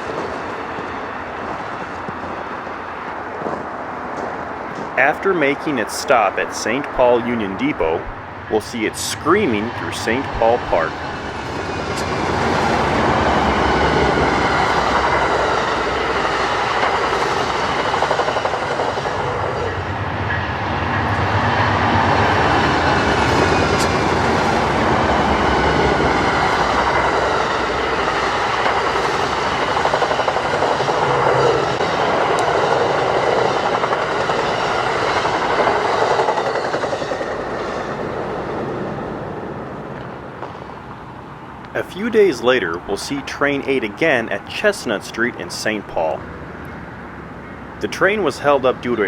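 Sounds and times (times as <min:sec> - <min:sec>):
train wheels clattering on rails: 0:00.0 - 0:05.1, 0:10.0 - 0:38.8.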